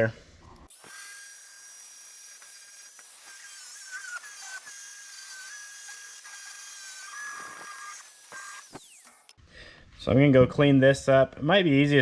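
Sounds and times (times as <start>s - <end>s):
angle grinder whine: 0.7s - 9.4s.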